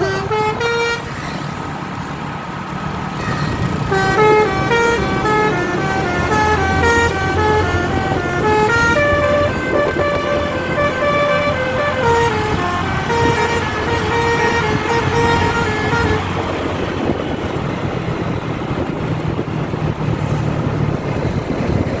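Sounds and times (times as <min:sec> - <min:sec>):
multi-tone musical bus horn: 0:00.0 - 0:01.7, 0:03.1 - 0:17.4
bus engine running: 0:00.0 - 0:22.0.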